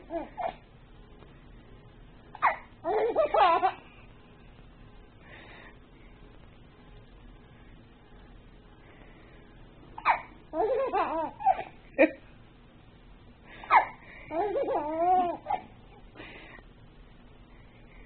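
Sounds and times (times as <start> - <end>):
small child laughing: 2.4 - 3.8, 10.0 - 12.2, 13.6 - 16.0
baby hiccuping: 10.0 - 10.4.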